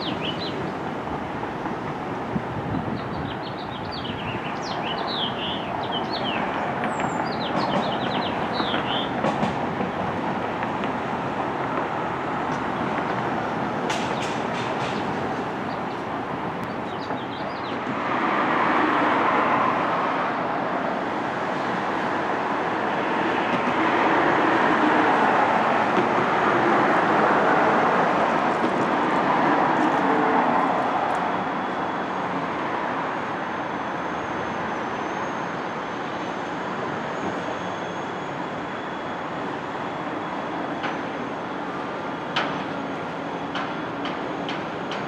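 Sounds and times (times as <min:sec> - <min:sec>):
train rumbling: 0:00.0 - 0:45.0.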